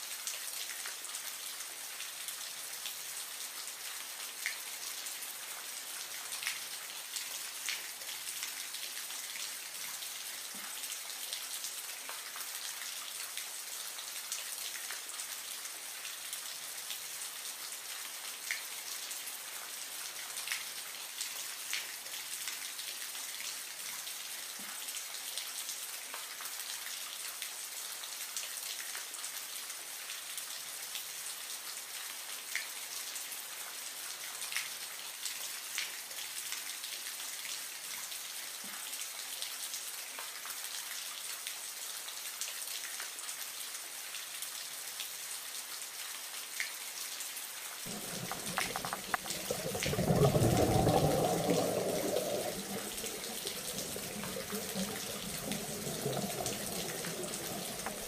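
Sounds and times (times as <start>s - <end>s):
water trickling and splashing: 47.8s - 58.0s
water drops: 47.9s - 58.0s.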